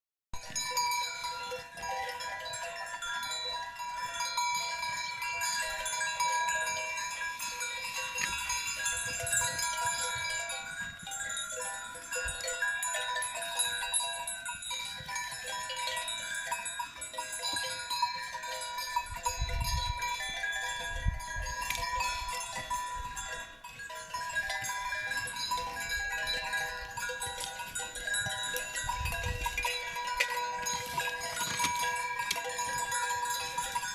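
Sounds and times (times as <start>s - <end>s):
cow bells clanking: 0.4s - 33.9s.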